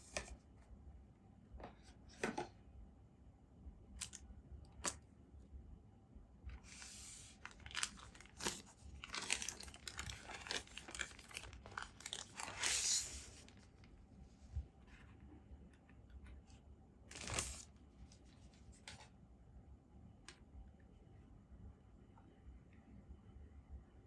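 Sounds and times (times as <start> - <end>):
plastic wrapping crinkling: 6.8 - 14.0, 17.1 - 18.3.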